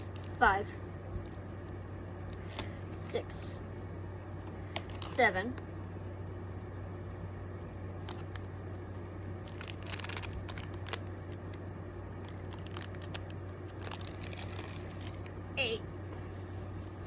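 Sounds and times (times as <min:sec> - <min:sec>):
packaging rustling and crinkling: 0:04.7 - 0:05.1, 0:09.4 - 0:11.6, 0:12.2 - 0:15.4.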